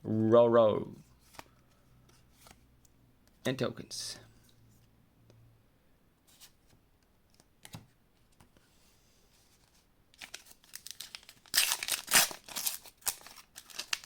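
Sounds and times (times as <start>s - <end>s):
foil pack tearing and crinkling: 10.2s - 14.0s.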